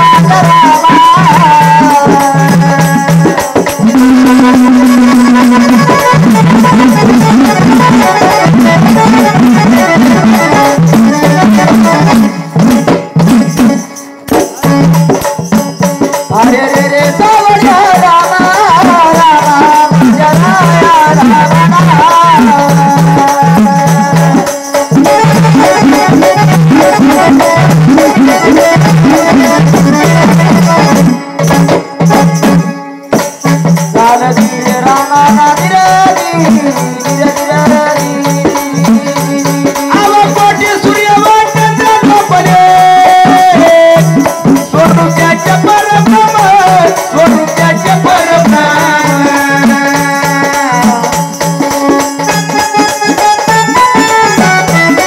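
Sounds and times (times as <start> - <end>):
drum strokes: 0.0 - 55.0
held instrumental tones: 0.0 - 55.0
solo voice singing: 16.3 - 24.6.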